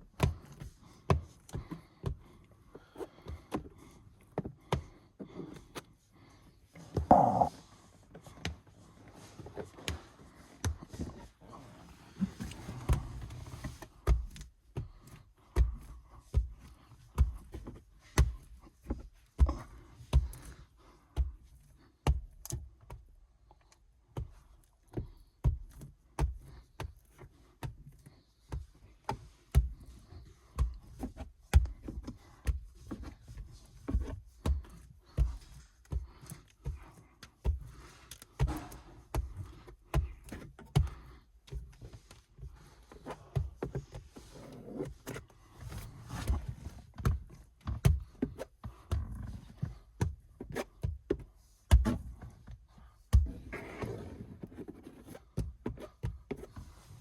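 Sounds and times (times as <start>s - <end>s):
dull thumps and knocks: 6.9s - 7.5s.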